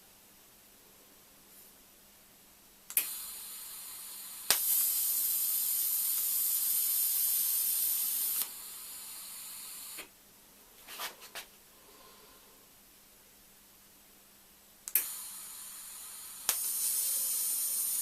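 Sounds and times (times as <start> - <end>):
welding arc cracking: 2.9 - 10.1, 14.9 - 18.0
welding arc hissing: 2.9 - 10.1, 14.9 - 18.0.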